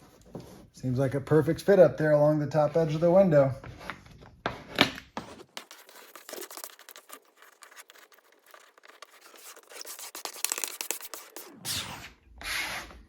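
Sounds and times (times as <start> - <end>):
rubbing decal on glass: 5.4 - 11.6.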